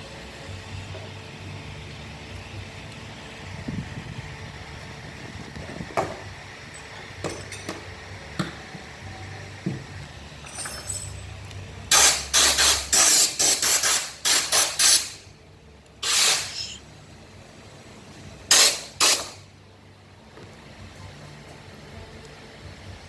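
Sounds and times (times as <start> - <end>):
hissing spray bursts: 16.0 - 16.8, 18.5 - 19.4.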